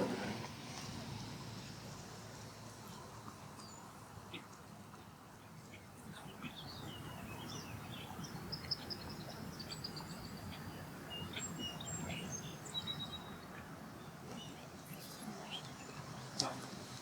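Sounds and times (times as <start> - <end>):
birds chirping: 5.7 - 16.8.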